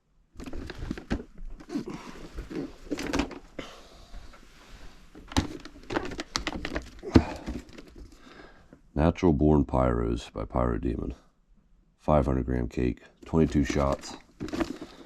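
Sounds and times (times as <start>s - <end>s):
cardboard boxes rustling: 0.4s - 3.5s, 5.1s - 8.2s, 13.4s - 15.0s
knocks and thumps on boxes: 5.3s - 7.8s.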